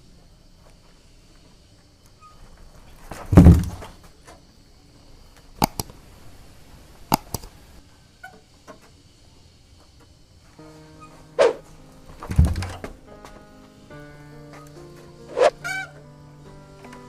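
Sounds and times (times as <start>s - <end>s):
dull thump: 3.1s - 4.0s, 12.2s - 13.0s
sharp clicks: 5.6s - 6.0s, 7.0s - 7.6s.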